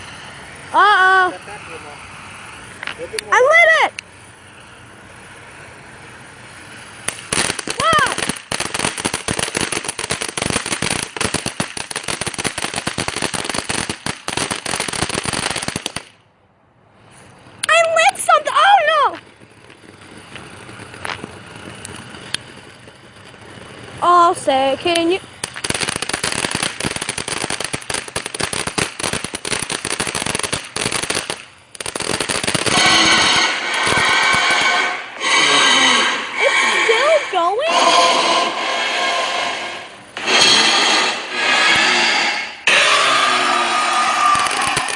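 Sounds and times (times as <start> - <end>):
firework cracks and pops: 0.0 - 16.3, 16.9 - 35.4, 44.0 - 44.9.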